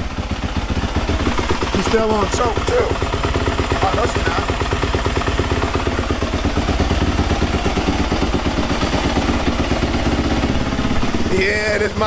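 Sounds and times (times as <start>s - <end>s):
dirt bike engine idling: 0.0s - 12.0s.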